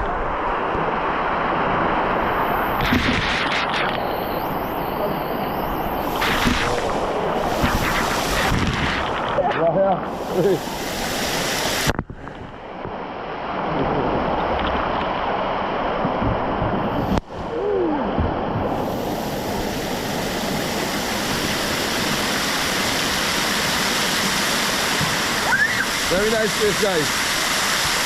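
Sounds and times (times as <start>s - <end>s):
water falling and splashing: 6.0s - 12.1s, 18.2s - 28.0s.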